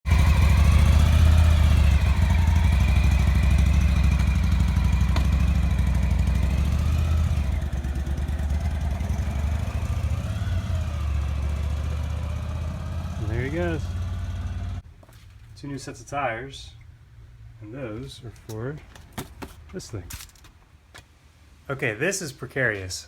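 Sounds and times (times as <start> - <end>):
motorcycle engine running: 0.0 - 14.8.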